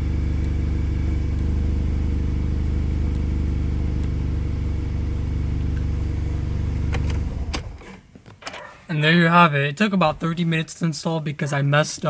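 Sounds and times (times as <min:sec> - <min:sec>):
car engine idling: 0:00.0 - 0:07.8.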